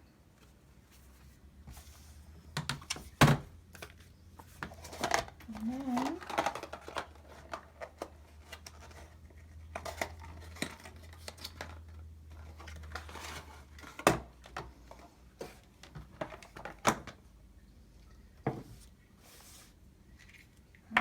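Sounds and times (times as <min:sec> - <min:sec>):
packaging clicks and rustles: 0:02.5 - 0:17.2.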